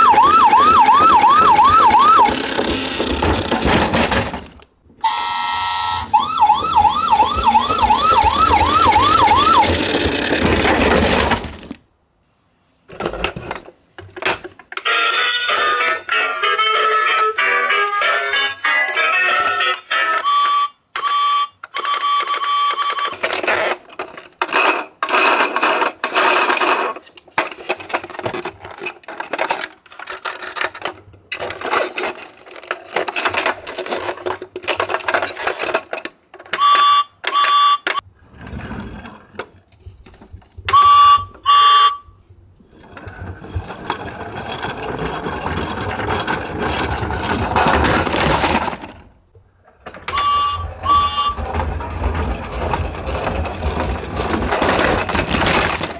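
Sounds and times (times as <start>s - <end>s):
toy siren sound effects: 0.0s - 3.5s, 5.0s - 10.3s, 14.9s - 23.0s, 36.6s - 38.0s, 40.7s - 42.1s, 50.1s - 51.4s
toy car rolling: 0.0s - 11.9s, 13.0s - 37.7s, 42.7s - 55.9s.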